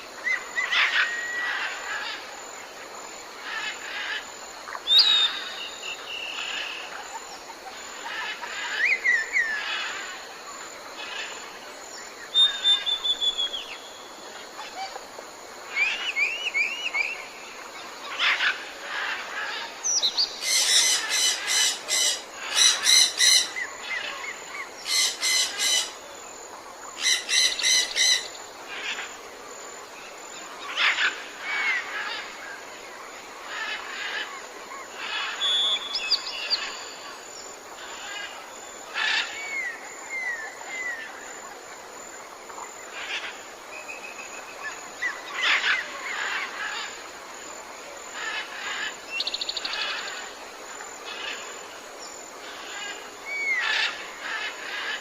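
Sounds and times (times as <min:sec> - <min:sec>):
background hiss: 0:00.0 - 0:55.0
birds whistling and chirping: 0:12.3 - 0:14.0, 0:35.4 - 0:36.7.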